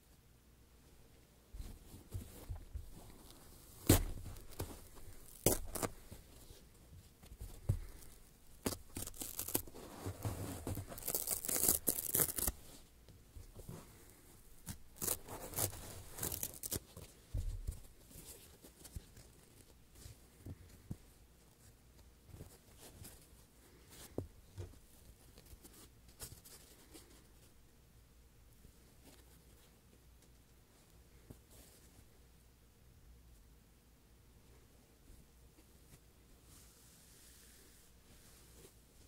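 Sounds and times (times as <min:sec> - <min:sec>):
foam blocks scratched and squeezed: 0:08.6 - 0:12.6.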